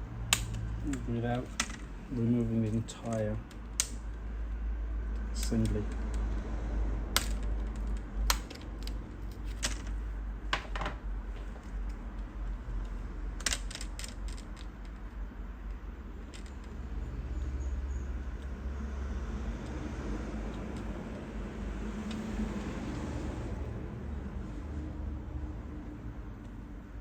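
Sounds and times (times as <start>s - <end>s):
steady low hum: 0.0s - 27.0s
laptop parts clicking and tapping: 0.3s - 1.9s, 2.6s - 4.0s, 7.1s - 11.8s.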